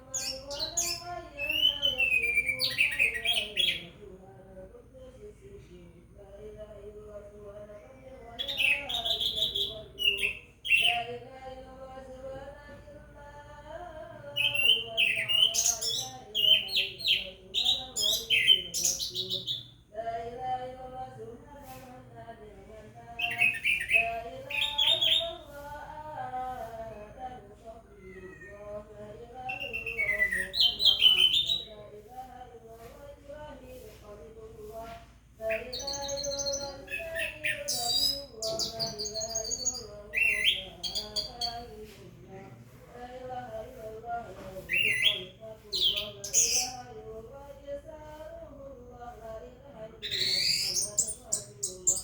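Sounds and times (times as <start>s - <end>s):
thrush singing: 0.0s - 42.0s, 42.9s - 52.0s
faint chanted voice: 0.0s - 52.0s
bird trill: 8.4s - 11.1s, 29.5s - 31.7s, 35.5s - 41.6s, 44.7s - 46.9s, 50.0s - 52.0s
thrush singing high chirps: 35.4s - 41.6s, 50.0s - 52.0s.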